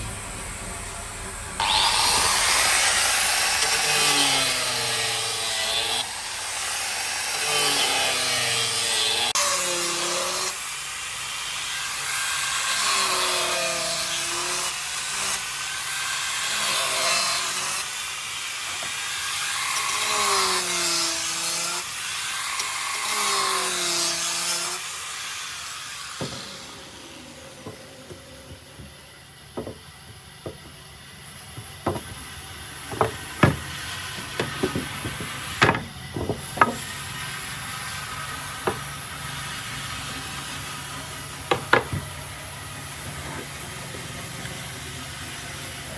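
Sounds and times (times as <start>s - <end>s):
power tool cutting wood: 1.6s - 42.2s
sharp knocks and taps: 29.6s - 30.8s, 31.5s - 32.3s, 32.9s - 36.8s.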